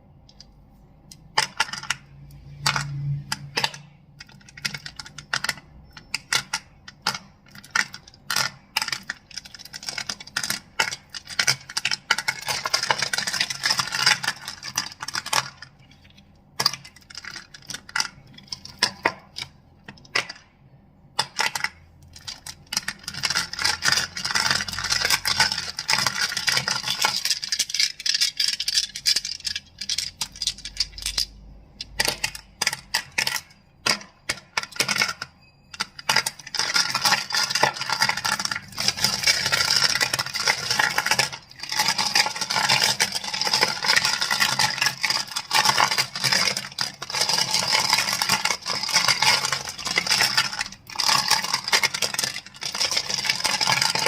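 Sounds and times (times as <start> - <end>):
crystals clicking together: 21.2 - 54.0.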